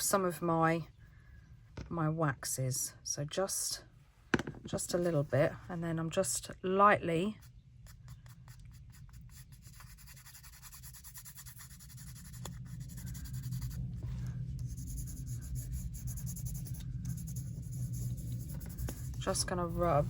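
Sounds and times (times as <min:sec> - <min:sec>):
wax rubbing on cardstock: 0:07.9 - 0:20.0.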